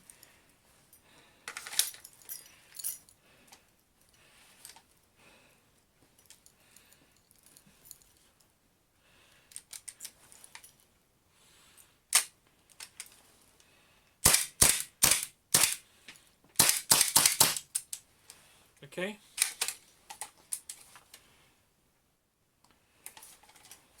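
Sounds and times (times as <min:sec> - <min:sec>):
gun handling clicks: 0:12.1 - 0:13.1, 0:16.6 - 0:18.0, 0:19.4 - 0:20.8
airsoft pistol shots: 0:14.2 - 0:15.8, 0:16.6 - 0:17.6.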